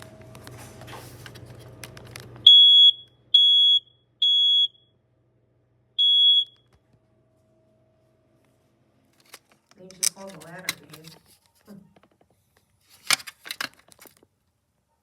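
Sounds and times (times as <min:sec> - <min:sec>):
smoke alarm beeping: 0:02.4 - 0:05.0, 0:06.0 - 0:06.7.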